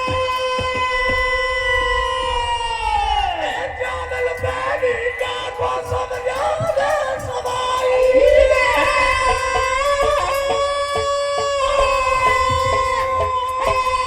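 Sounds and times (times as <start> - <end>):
devotional singing: 0.0 - 14.0
steady drum beat: 3.5 - 14.0.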